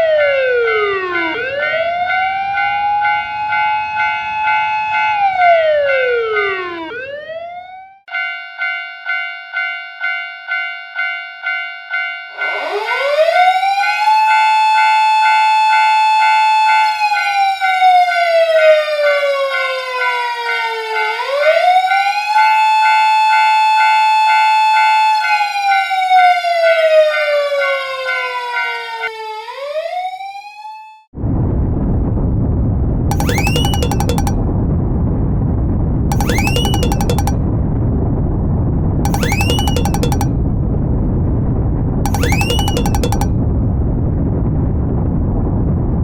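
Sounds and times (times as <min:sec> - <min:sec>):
wailing emergency siren: 0:05.2 - 0:07.8
crossing signal electronic bell: 0:33.1 - 0:34.4, 0:36.1 - 0:37.4, 0:39.1 - 0:40.3, 0:42.1 - 0:43.3.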